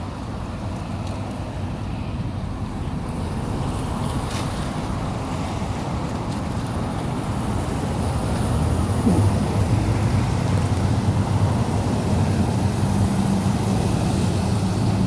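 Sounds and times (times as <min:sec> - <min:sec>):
excavator engine rumbling: 0:08.0 - 0:12.9.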